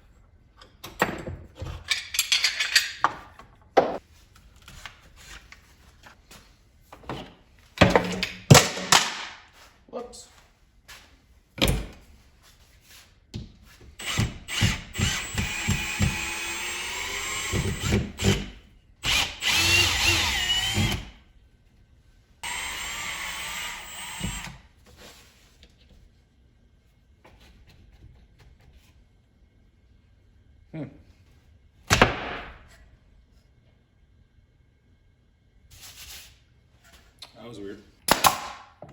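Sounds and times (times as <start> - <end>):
power drill running: 14.0 - 21.1, 22.4 - 24.6.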